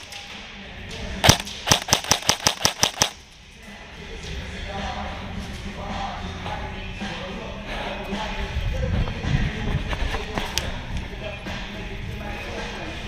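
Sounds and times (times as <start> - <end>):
airsoft gun shots: 1.2 - 3.2.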